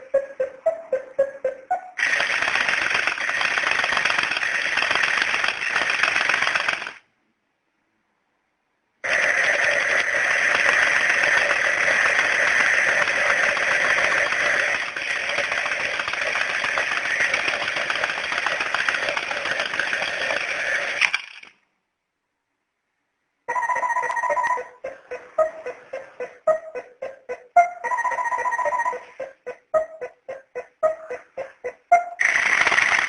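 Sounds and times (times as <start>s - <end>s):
alarm clock ringing: 23.5s - 25.7s, 27.6s - 30.1s.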